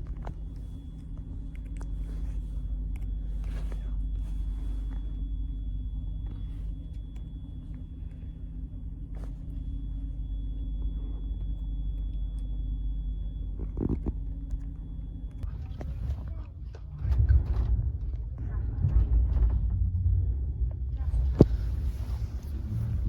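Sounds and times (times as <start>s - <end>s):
train rumble inside carriage: 0.0s - 7.0s, 15.4s - 23.0s
faint high whine: 0.0s - 17.9s, 20.9s - 23.0s.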